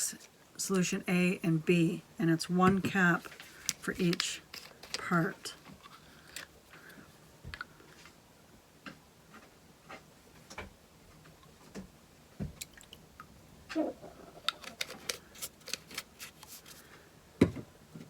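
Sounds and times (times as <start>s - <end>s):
plastic bottles clicking and tapping: 2.7s - 6.9s, 14.4s - 16.5s.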